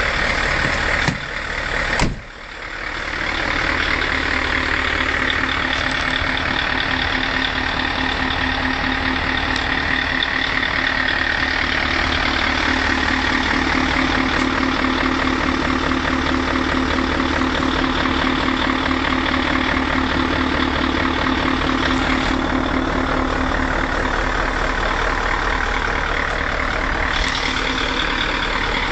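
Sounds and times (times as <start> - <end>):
engine running steadily: 0.0 - 28.9.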